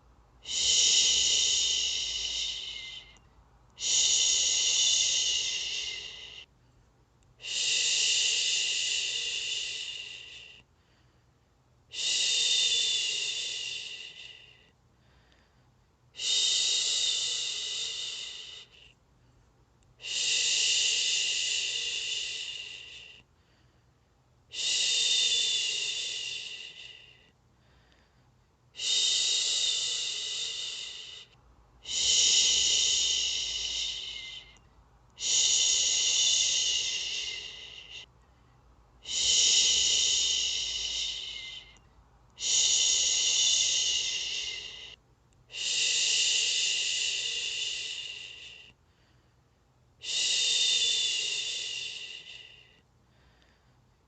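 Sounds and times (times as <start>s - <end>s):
person shushing: 0.4s - 3.2s, 3.8s - 6.4s, 28.8s - 34.6s, 35.2s - 38.1s, 39.0s - 41.8s, 42.4s - 48.6s.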